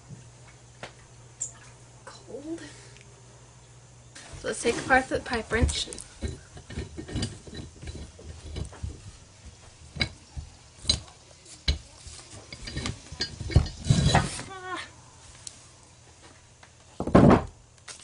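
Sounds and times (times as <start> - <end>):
metal clicks and scrapes: 5.7 - 8.9, 10.8 - 14.4
metal clatter: 5.7 - 9.1, 9.9 - 14.5.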